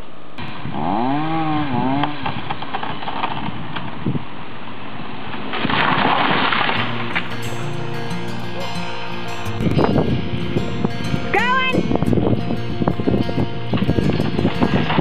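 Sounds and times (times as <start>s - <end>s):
chainsaw running: 0.4s - 3.5s.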